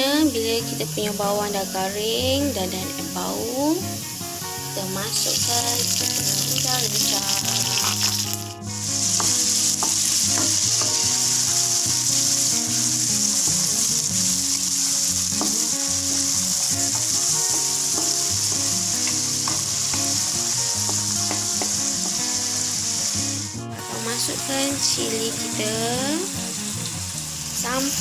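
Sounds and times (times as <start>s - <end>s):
food sizzling in hot oil: 0.0s - 28.0s
spatula tapping wok: 5.4s - 23.3s.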